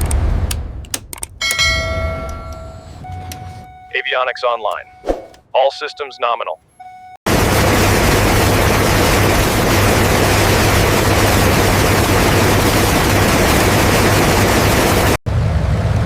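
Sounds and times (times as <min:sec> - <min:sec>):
piston aircraft engines roaring: 0:00.0 - 0:16.0
quieter engine sound: 0:15.3 - 0:16.0.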